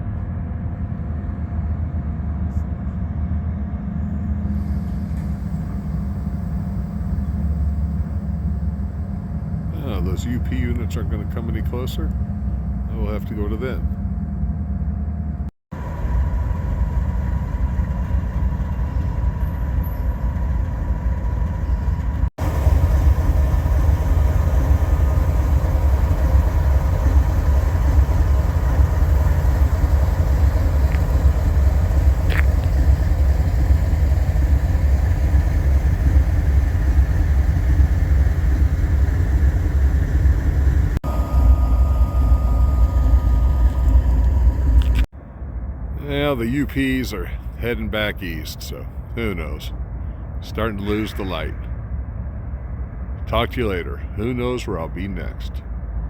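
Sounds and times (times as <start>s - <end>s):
low vehicle rumble: 0.0s - 56.0s
faint steady tone: 40.4s - 45.1s.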